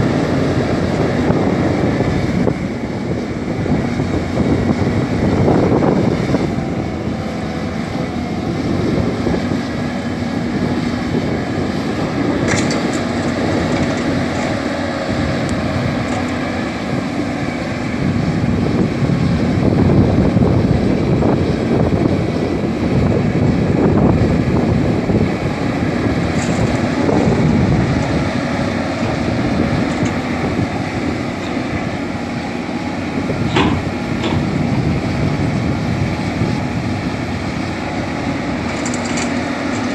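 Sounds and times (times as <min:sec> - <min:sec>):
excavator diesel engine and hydraulics: 0:00.0 - 0:39.9
short knocks: 0:33.4 - 0:34.6.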